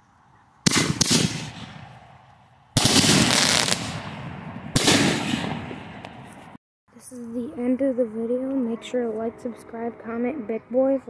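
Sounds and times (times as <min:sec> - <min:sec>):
firework crackling: 0:00.7 - 0:01.8, 0:02.8 - 0:06.6
firework shells bursting: 0:02.8 - 0:06.4.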